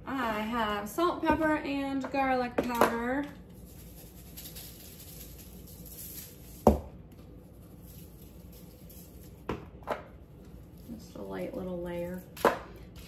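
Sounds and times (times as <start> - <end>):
patter of seasoning grains: 2.9 - 13.0
container knocking on counter: 6.6 - 6.9.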